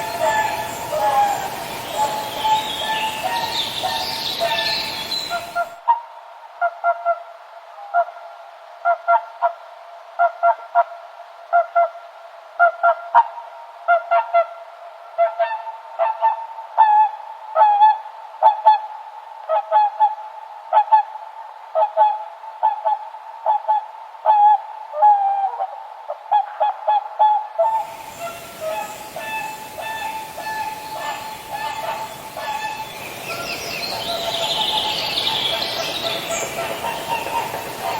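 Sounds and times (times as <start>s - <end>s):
swans honking: 0.0s - 5.6s, 27.7s - 37.9s
other birds calling: 0.0s - 5.7s, 27.7s - 37.9s
broad hiss: 0.0s - 5.8s, 27.7s - 37.9s.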